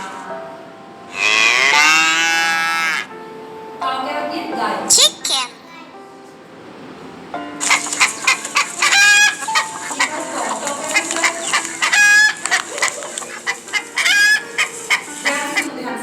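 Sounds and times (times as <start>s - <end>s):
chicken drawn-out calls: 1.1s - 3.1s, 7.6s - 15.7s
chickens clucking: 1.1s - 3.1s, 7.6s - 16.0s.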